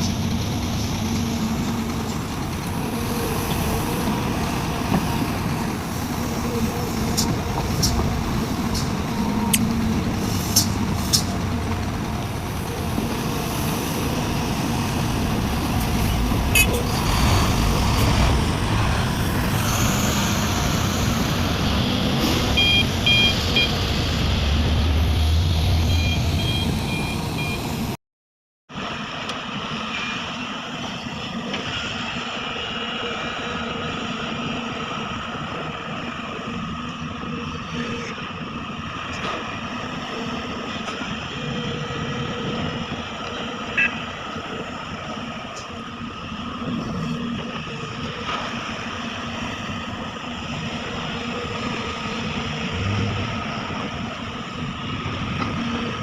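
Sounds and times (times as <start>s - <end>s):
excavator diesel engine: 0.0s - 28.0s, 28.8s - 56.0s
reversing alarm beeps: 22.6s - 23.8s, 25.8s - 27.8s.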